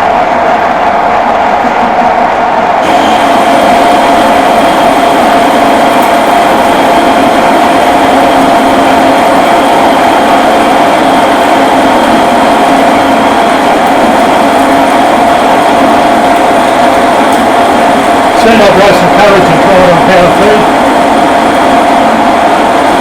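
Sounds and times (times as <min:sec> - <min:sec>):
metal lathe cutting steel: 0:02.8 - 0:23.0.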